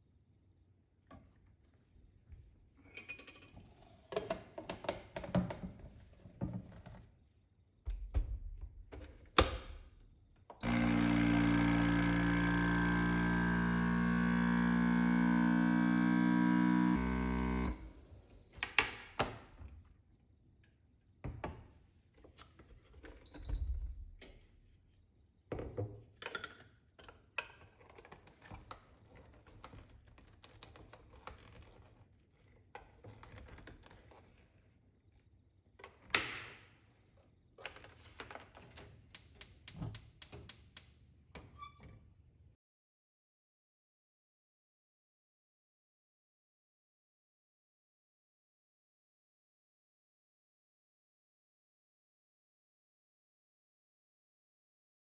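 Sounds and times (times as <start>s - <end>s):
blender motor running: 10.6s - 17.9s
short electronic beeps: 17.6s - 18.7s.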